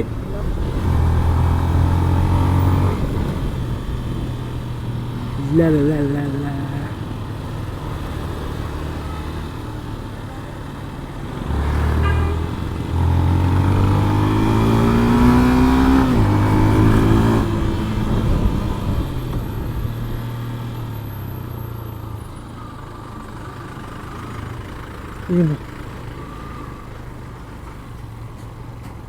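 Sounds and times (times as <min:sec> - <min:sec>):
motorcycle engine accelerating: 0:00.0 - 0:21.6.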